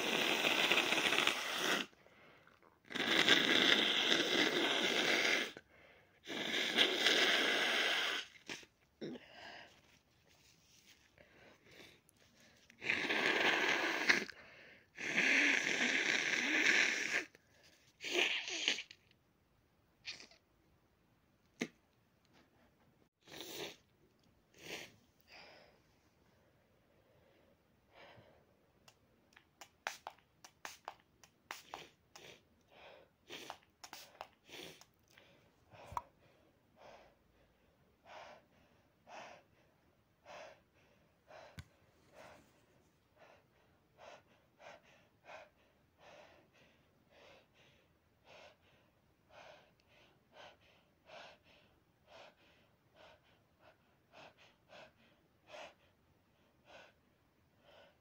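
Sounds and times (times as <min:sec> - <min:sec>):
person breathing quickly: 0:31.5 - 0:58.0.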